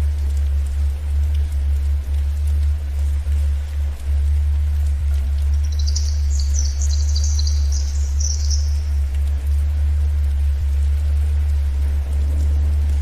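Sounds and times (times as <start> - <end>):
faint forest ambience: 0.0 - 13.0
steady low drone: 0.0 - 13.0
songbird twittering: 5.5 - 9.0.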